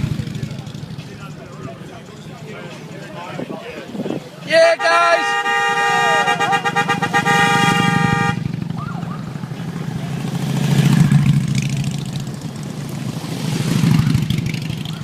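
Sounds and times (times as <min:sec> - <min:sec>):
vehicle horn: 0:04.6 - 0:08.5
passing vehicle engine: 0:05.2 - 0:15.0.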